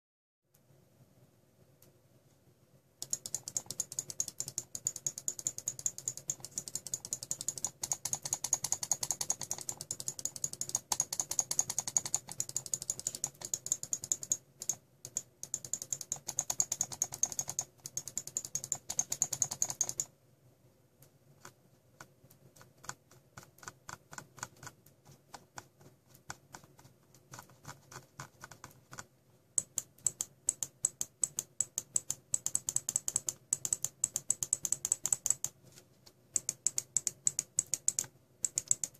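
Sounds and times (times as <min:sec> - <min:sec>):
mouse buttons clicking: 0:03.0 - 0:20.1, 0:27.3 - 0:35.6, 0:36.3 - 0:38.9.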